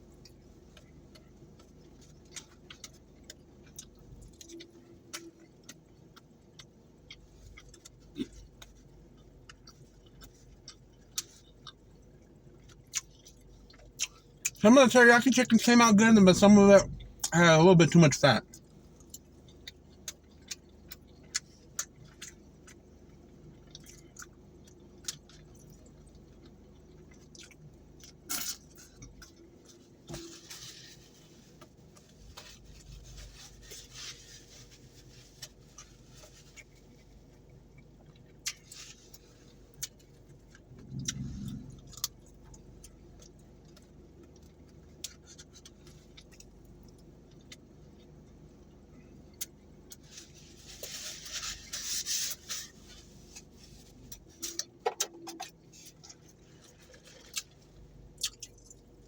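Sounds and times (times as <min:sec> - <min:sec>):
chewing: 0:00.2 - 0:14.6, 0:18.5 - 0:30.3, 0:37.7 - 0:48.2, 0:54.1 - 0:59.0.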